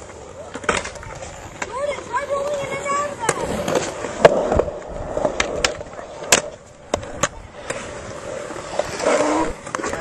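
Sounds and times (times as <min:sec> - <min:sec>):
skateboard clacks and knocks: 0:00.0 - 0:07.9
skateboard rolling: 0:00.0 - 0:10.0.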